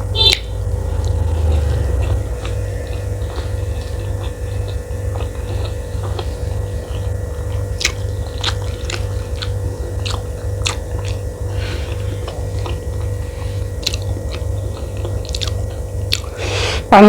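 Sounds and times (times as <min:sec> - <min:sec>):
person chewing rice: 0:00.0 - 0:16.8
steady low hum: 0:00.0 - 0:17.0
wet mouth clicks: 0:15.2 - 0:16.4.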